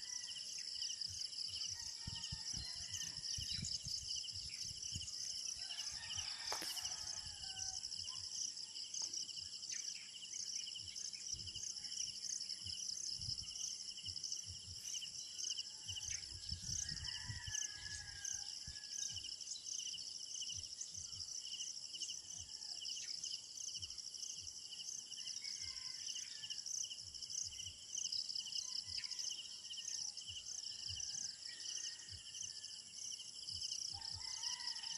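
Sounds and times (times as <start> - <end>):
insects chirping: 0.0 - 34.9
wind rumble on microphone: 1.9 - 5.2, 15.8 - 18.9.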